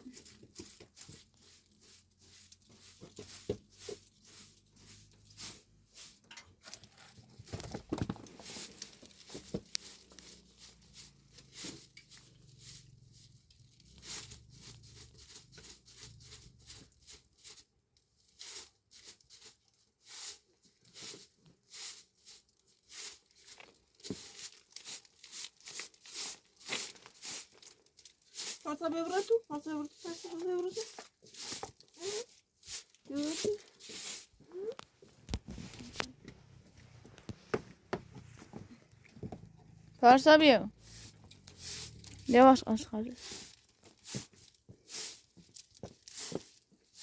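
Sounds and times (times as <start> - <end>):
crunching and crackling: 6.2 - 18.0, 22.6 - 29.4.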